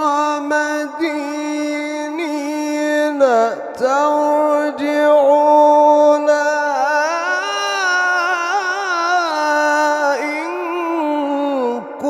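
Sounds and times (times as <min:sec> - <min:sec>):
man chanting melodically: 0:00.0 - 0:12.0.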